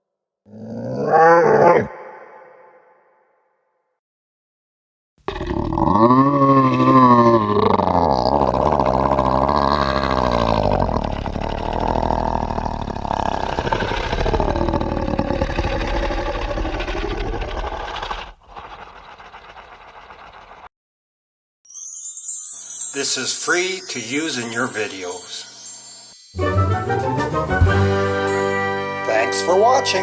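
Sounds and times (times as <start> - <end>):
monster growling roar: 0.5 - 1.9, 5.3 - 20.7.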